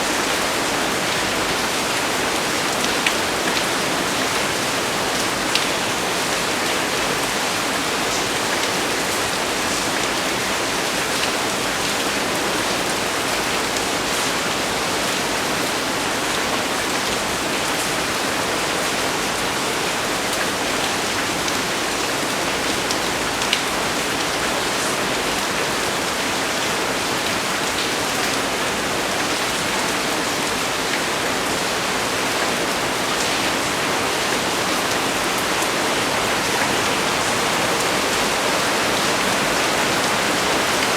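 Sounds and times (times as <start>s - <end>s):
heavy rain on leaves: 0.0s - 40.9s.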